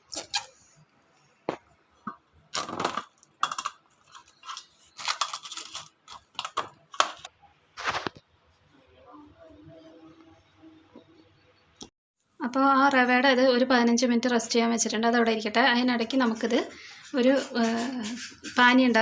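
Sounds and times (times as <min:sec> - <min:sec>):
dishes and utensils clattering: 0:03.4 - 0:04.6.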